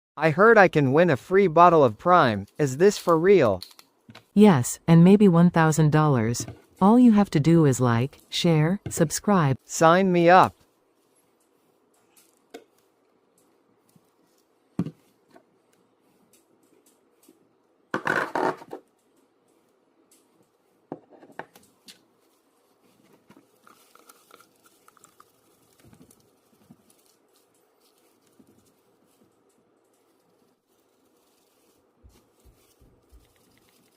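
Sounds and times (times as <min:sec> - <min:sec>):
crinkling and tearing: 0:22.0 - 0:33.9
soft rustling and patting: 0:30.0 - 0:33.9.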